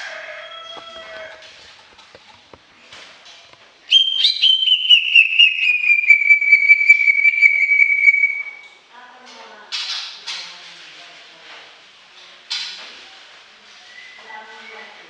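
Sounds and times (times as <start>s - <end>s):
bird whistling long note: 3.9s - 8.6s.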